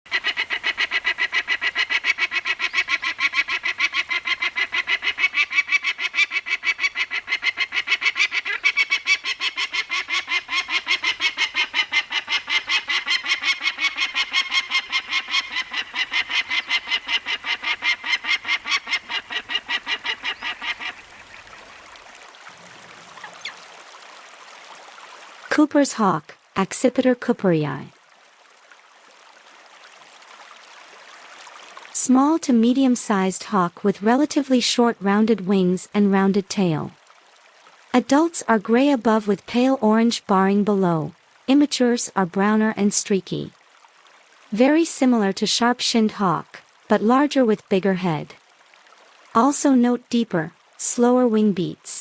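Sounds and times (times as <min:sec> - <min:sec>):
hawk cackling call: 0:00.1 - 0:21.1.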